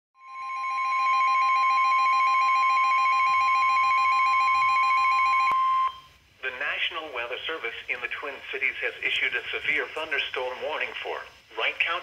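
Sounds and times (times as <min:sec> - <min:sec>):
high-pitched alarm tone: 0:00.2 - 0:06.2.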